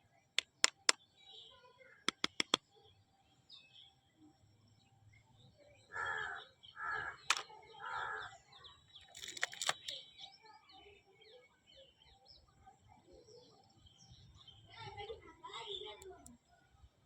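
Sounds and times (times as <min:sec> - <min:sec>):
small birds chirping: 0:00.0 - 0:17.0
sharp clicks: 0:00.4 - 0:01.0, 0:02.1 - 0:02.6, 0:09.1 - 0:10.0
crow cawing: 0:05.9 - 0:08.3.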